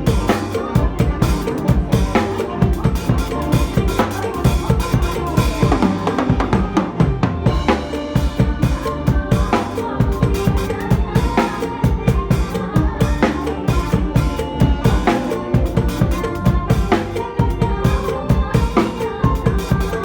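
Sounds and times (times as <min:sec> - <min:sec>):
backing music: 0:00.0 - 0:20.0
drum kit playing fast rhythm: 0:00.0 - 0:20.0.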